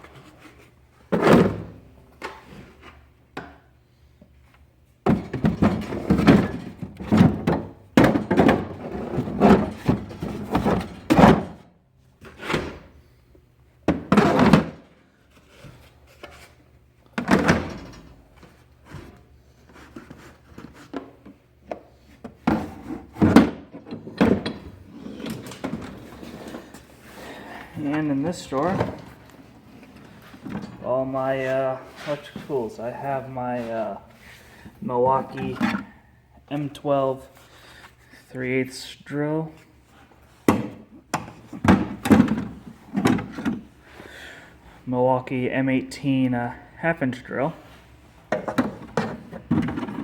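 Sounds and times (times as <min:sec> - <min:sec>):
tool box thunks and knocks: 0:05.0 - 0:11.6, 0:13.9 - 0:14.9, 0:17.2 - 0:18.0, 0:22.3 - 0:26.1, 0:28.6 - 0:29.2, 0:40.5 - 0:43.6, 0:48.3 - 0:50.0
drawers shutting and opening: 0:12.2 - 0:12.9, 0:13.9 - 0:14.9, 0:17.2 - 0:18.2, 0:22.3 - 0:30.9, 0:48.3 - 0:50.0.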